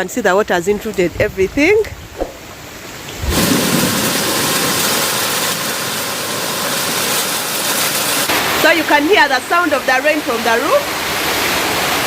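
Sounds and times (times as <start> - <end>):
heavy rain on a roof: 3.0 - 12.0.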